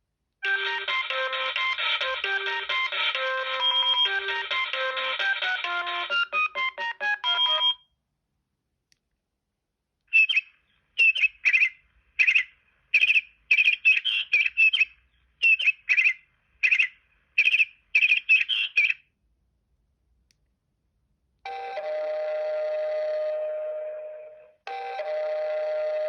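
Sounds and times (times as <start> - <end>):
bird-like chirping ringtone: 2.4 - 5.1, 6.2 - 7.8.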